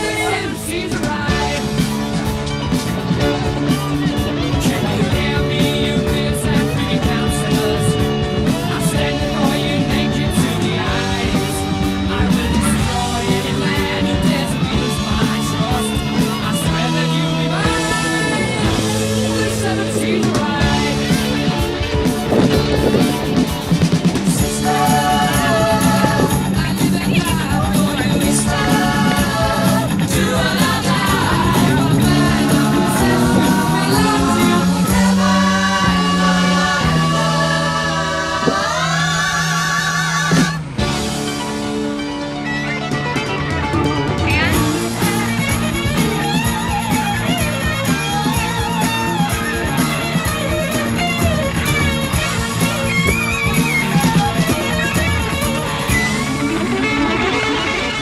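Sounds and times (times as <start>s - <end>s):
musical accompaniment: 0.0s - 58.0s
person singing long notes: 24.4s - 40.6s.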